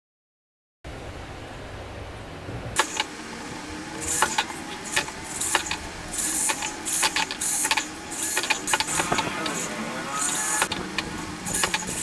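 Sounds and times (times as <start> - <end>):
sharp clicks and light knocks: 4.0 - 12.0
short scraping strokes: 4.0 - 12.0.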